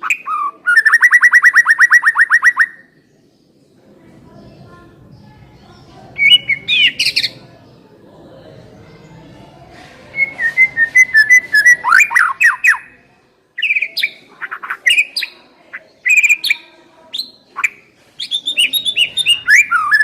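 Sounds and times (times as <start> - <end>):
songbird singing whistles and chirps: 0.0 - 3.1, 6.2 - 7.4, 10.1 - 13.0, 13.6 - 15.4, 16.0 - 20.0.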